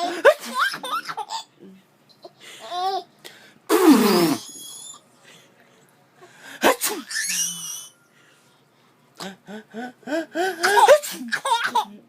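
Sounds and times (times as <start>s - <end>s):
man sneezing: 3.7s - 4.4s, 6.6s - 7.2s
baby squealing and giggling: 4.2s - 5.0s, 7.0s - 8.0s.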